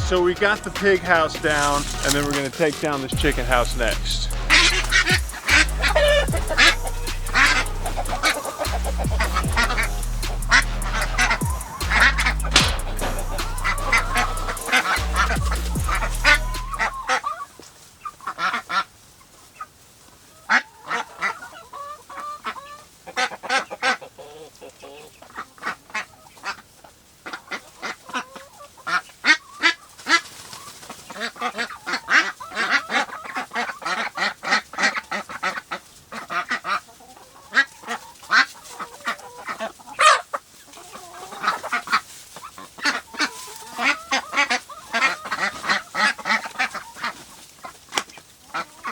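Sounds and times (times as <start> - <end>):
poultry calling: 0.0 - 18.9, 20.3 - 48.9.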